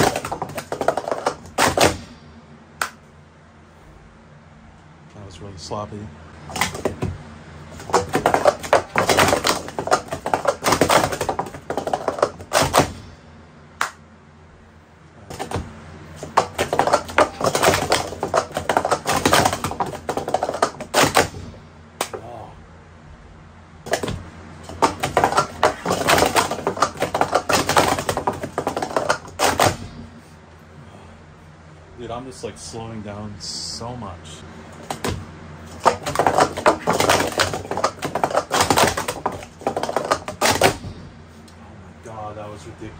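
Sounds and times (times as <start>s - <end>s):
plastic cups clattering: 0.0s - 2.1s, 6.5s - 12.9s, 15.3s - 22.2s, 23.9s - 29.9s, 34.8s - 40.9s.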